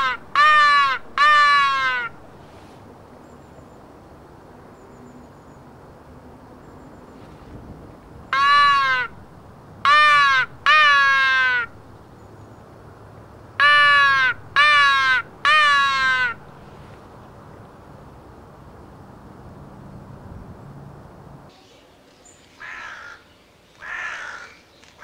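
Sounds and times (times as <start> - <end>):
crow call caws: 0.0 - 2.2, 8.3 - 9.2, 9.8 - 11.7, 13.6 - 16.4, 22.6 - 24.7.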